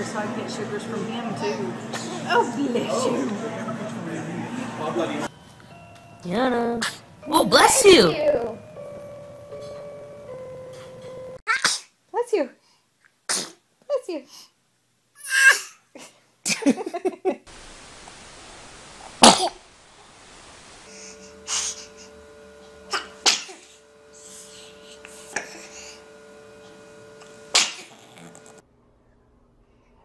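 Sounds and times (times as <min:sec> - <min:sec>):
children sneezing: 0:01.5 - 0:02.3, 0:13.3 - 0:13.6, 0:15.2 - 0:16.1, 0:22.9 - 0:23.6, 0:27.5 - 0:28.5.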